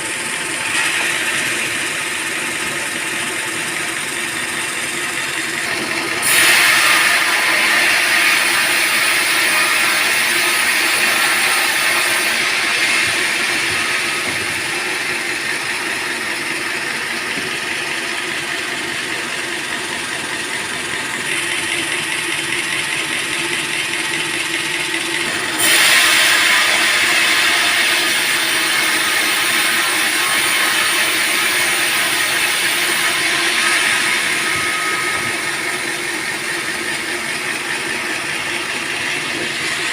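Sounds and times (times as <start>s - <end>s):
band saw running: 0.0s - 39.9s
blade cutting through log: 0.6s - 3.5s, 4.1s - 17.8s, 25.2s - 39.9s.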